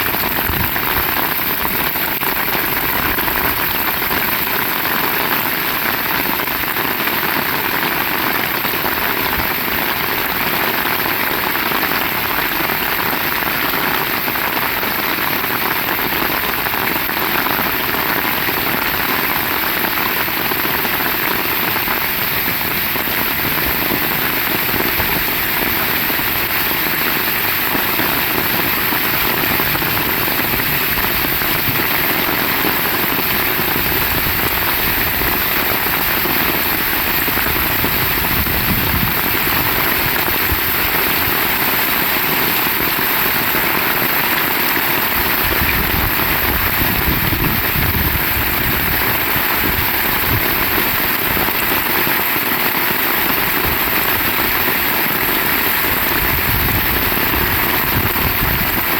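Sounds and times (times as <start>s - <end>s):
heavy rain: 0.0s - 58.9s.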